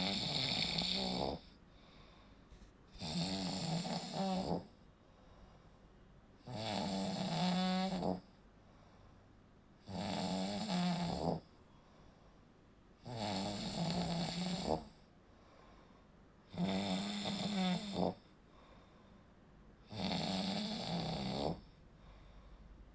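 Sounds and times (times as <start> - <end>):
buzzing snore: 0.0 - 1.6, 2.9 - 4.8, 6.4 - 8.4, 9.8 - 11.5, 13.0 - 15.1, 16.5 - 18.3, 19.8 - 21.8.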